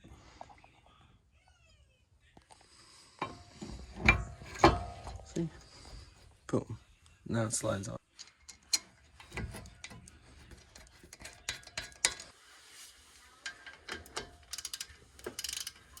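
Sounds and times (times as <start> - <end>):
metal tools clinking: 8.1 - 12.3, 13.3 - 16.0.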